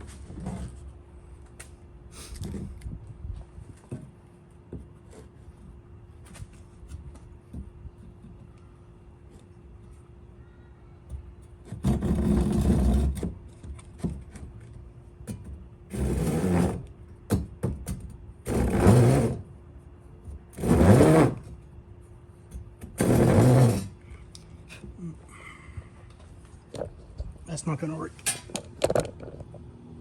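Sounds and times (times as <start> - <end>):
power saw cutting wood: 15.9 - 16.9, 18.4 - 19.4, 20.6 - 21.5, 22.9 - 24.0.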